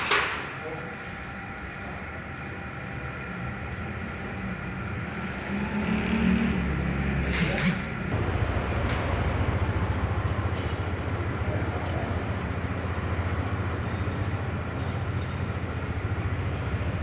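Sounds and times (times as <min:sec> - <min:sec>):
motorcycle engine running: 0:07.4 - 0:17.0.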